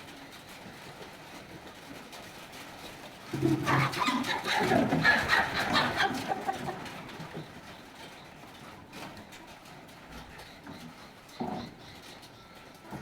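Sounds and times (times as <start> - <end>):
chickens clucking: 3.4 - 8.1.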